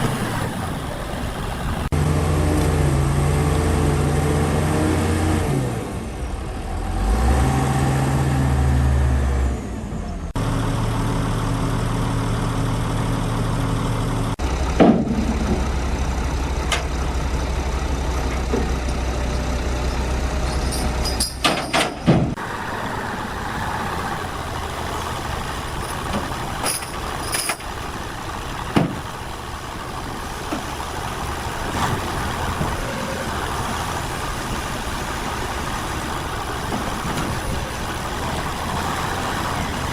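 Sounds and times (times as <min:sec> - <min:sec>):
heavy machinery engines running: 0:00.0 - 0:39.9
sharp knocks and clanks: 0:14.8 - 0:15.7, 0:20.6 - 0:22.4, 0:28.7 - 0:29.1.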